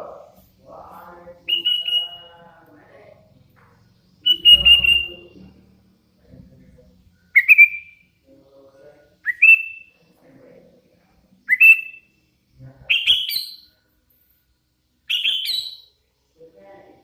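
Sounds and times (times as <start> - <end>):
bird whistled calls: 4.2 - 5.3, 7.3 - 8.0, 15.1 - 15.9.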